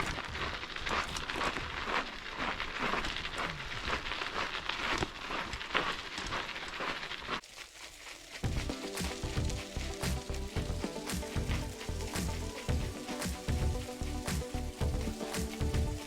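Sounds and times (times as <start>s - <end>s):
footsteps crunching on gravel: 0.0s - 16.0s
background music: 8.5s - 16.0s.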